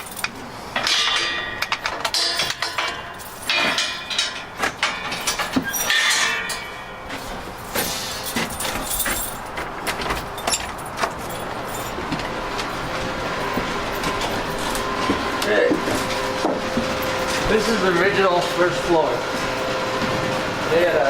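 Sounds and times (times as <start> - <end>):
knocks and clatter: 0.0 - 17.8
footsteps walking down stairs: 6.6 - 20.7.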